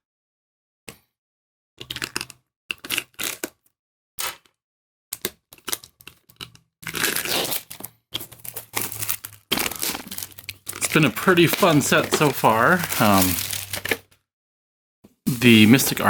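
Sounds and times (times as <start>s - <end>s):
packaging tearing and crinkling: 6.9s - 14.0s.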